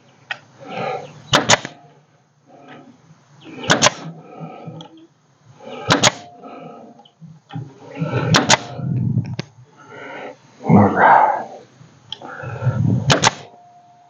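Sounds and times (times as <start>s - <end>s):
pneumatic stapler firing: 1.3s - 1.8s, 3.6s - 4.1s, 5.8s - 6.3s, 8.3s - 8.8s, 13.1s - 13.6s.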